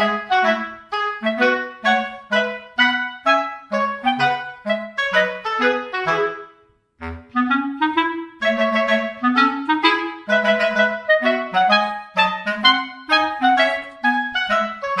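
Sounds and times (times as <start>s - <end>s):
bouncy instrumental music: 0.0s - 15.0s.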